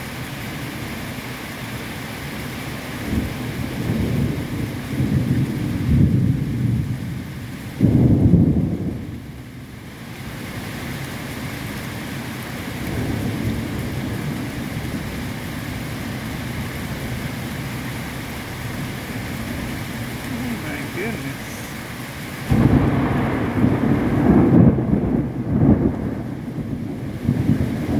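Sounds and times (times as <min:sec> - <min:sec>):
steady rain falling: 0:00.0 - 0:27.9
thunder rumbling: 0:03.1 - 0:09.2, 0:12.8 - 0:27.9.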